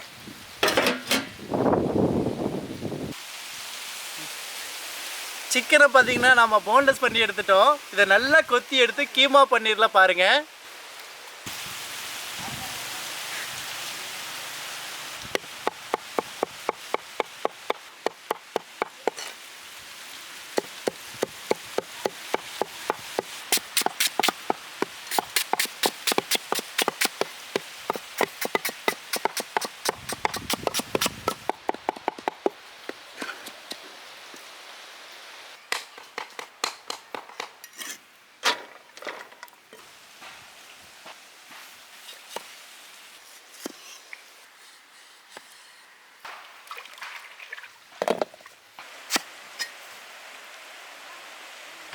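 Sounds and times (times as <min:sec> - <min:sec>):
knife chopping on a board: 0:20.6 - 0:32.5.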